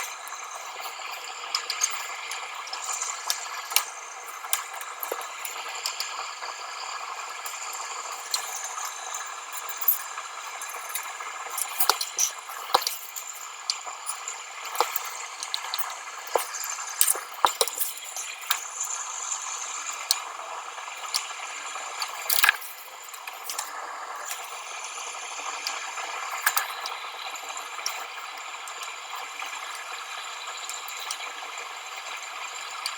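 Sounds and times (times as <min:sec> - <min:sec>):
steady hiss: 0:00.0 - 0:32.9
screws and metal parts clinking: 0:08.1 - 0:13.4, 0:14.1 - 0:18.7, 0:22.0 - 0:24.7.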